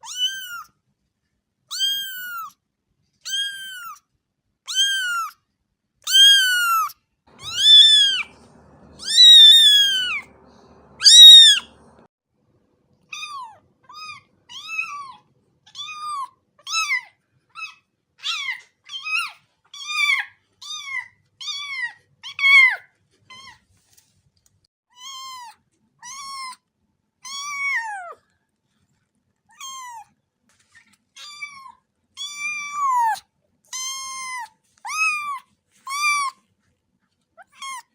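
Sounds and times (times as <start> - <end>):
kittens meowing: 0.0 - 0.7, 4.7 - 5.3, 6.1 - 11.9.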